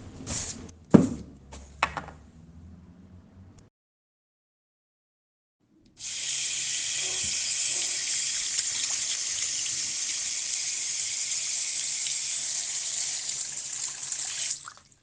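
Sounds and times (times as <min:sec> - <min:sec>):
water running from a tap: 0:06.0 - 0:15.0.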